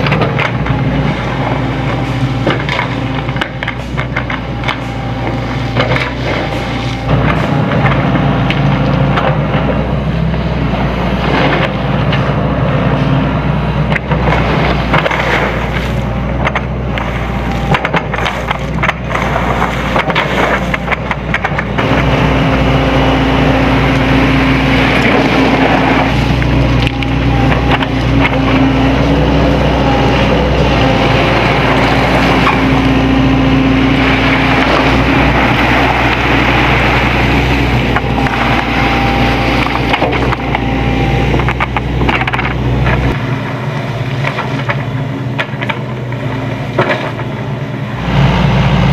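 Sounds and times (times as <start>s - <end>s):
excavator diesel engine: 0.0s - 48.9s
bucket scraping through gravel: 17.0s - 20.8s, 30.1s - 40.4s.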